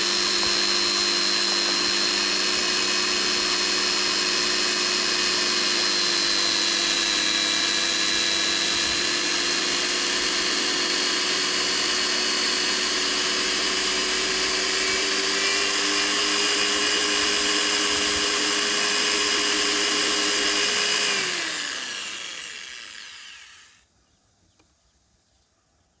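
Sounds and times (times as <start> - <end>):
electric drill whining: 0.0 - 23.8.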